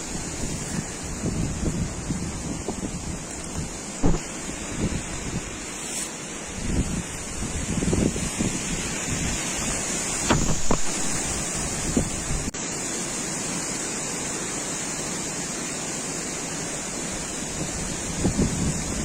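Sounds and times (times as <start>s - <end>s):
wind buffeting microphone: 0.0s - 12.6s, 17.5s - 19.0s.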